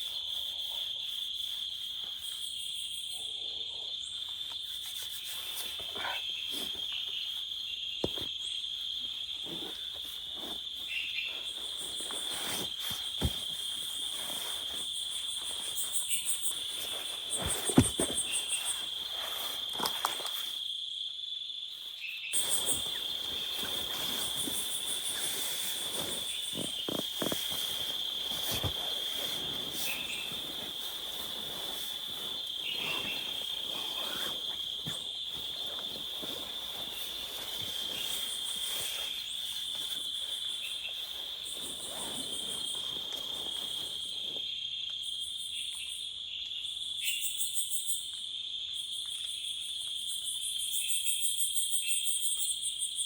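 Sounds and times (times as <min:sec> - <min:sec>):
crickets trilling: 0:00.0 - 0:53.0.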